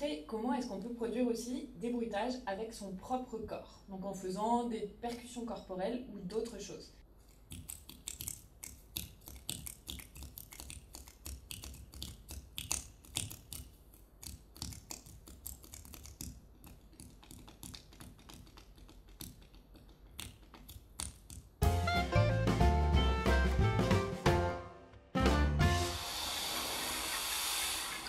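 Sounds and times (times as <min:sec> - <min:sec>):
taps and clicks on the body: 0:07.3 - 0:21.6.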